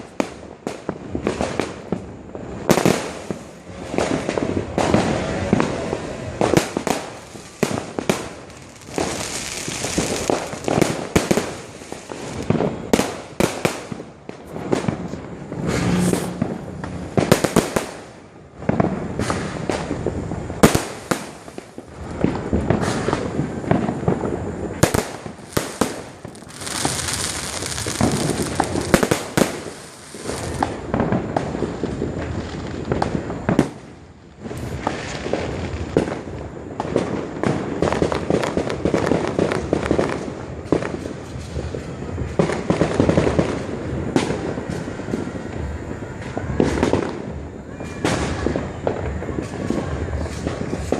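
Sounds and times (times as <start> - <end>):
fireworks bangs: 0.0 - 50.9
fireworks crackling: 0.0 - 50.9.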